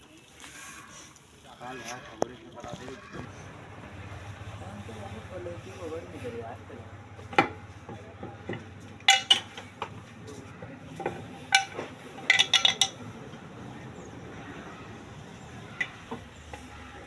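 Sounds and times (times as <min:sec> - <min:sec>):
metal tools clinking: 0:09.0 - 0:09.9, 0:11.5 - 0:13.1.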